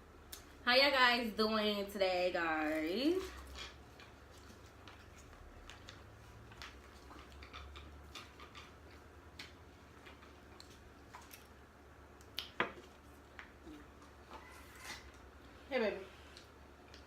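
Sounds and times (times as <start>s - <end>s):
eating clicks and smacks: 4.9s - 13.6s.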